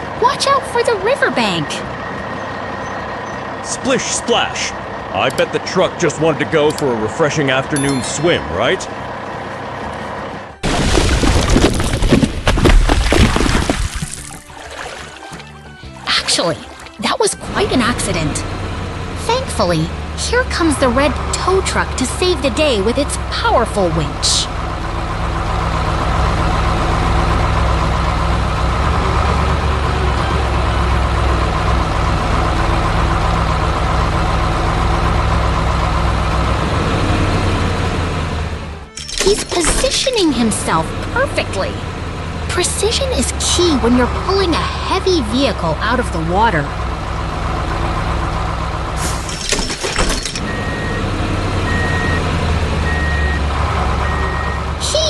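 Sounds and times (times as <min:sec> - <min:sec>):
heavy truck engine running: 0:00.0 - 0:14.1, 0:15.0 - 0:55.0
reversing beeper: 0:50.4 - 0:54.7.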